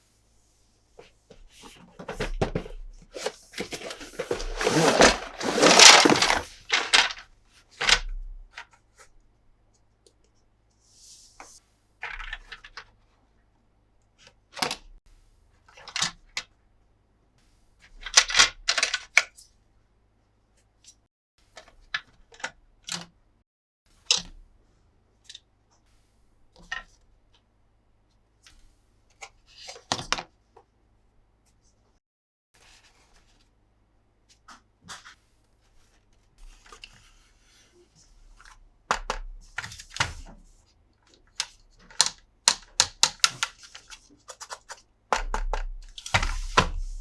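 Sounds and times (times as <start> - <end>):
short rustle: 3.2 - 7.2.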